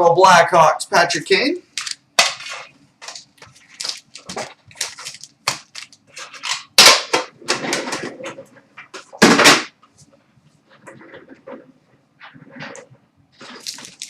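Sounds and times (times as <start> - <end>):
foil wrappers crinkling and tearing: 1.8 - 6.7, 13.4 - 14.0.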